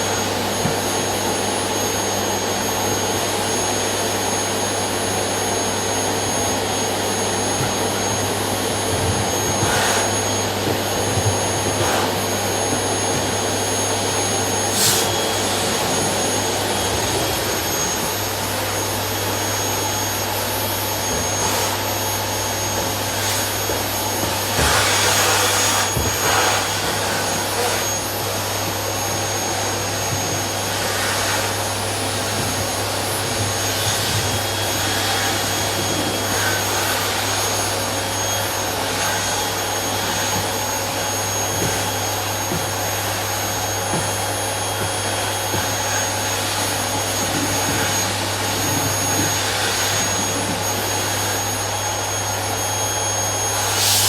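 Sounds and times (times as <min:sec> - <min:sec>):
vacuum cleaner running: 0:00.0 - 0:54.0.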